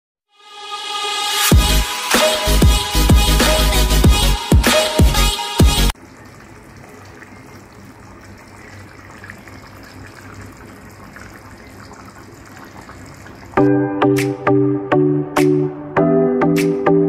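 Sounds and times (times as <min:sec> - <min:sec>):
electronic music: 0:00.3 - 0:06.0, 0:13.6 - 0:17.0
water running in a stream: 0:05.9 - 0:13.6.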